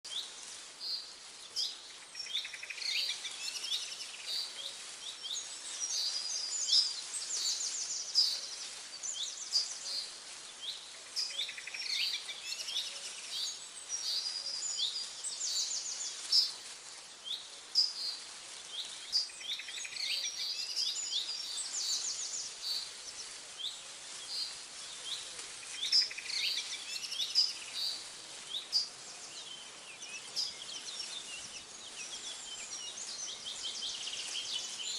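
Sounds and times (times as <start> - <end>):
steady background hiss: 0.1 - 34.9
birds chirping and singing: 17.2 - 34.9.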